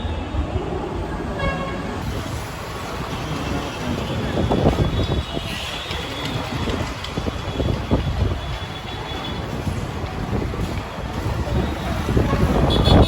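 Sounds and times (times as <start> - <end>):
vehicle noise rumble: 0.0 - 13.0.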